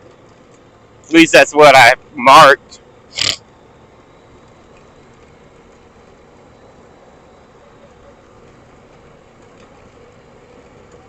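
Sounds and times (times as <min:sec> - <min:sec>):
atv engine drone: 0:00.0 - 0:11.0
road and wind noise: 0:00.0 - 0:11.0.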